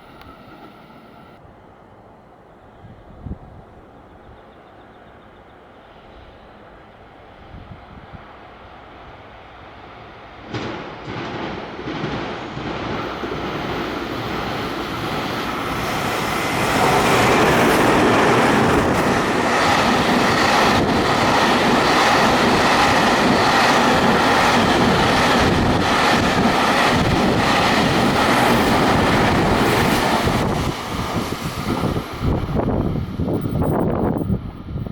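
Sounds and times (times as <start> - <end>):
electric train passing: 0.0 - 34.9.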